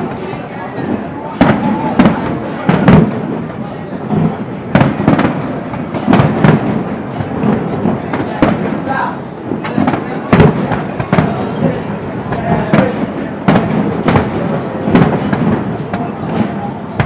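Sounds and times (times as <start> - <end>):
fireworks bursting bangs: 0.0 - 17.0
fireworks crackle and rumble: 0.0 - 17.0.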